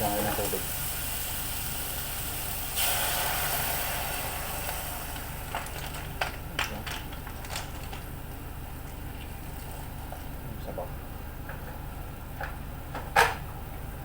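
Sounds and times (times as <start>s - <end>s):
water hissing in hot pan: 0.0s - 6.2s.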